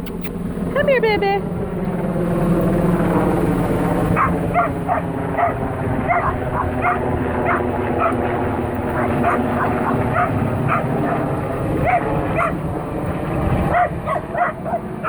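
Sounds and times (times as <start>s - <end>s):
small dogs yapping: 0.0s - 0.4s, 4.2s - 12.6s, 13.6s - 15.0s.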